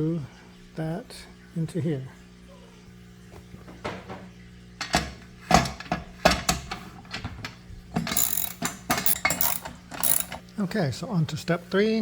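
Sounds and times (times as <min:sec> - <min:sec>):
screw clicking into metal rail: 0:08.0 - 0:10.4.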